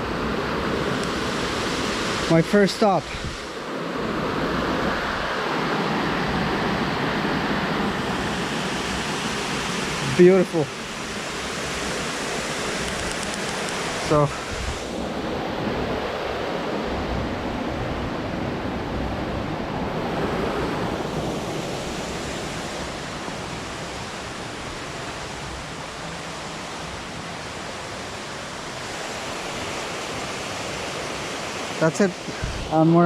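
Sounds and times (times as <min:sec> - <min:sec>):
water rushing over spillway: 0:00.0 - 0:04.0, 0:07.1 - 0:15.0, 0:20.0 - 0:33.0.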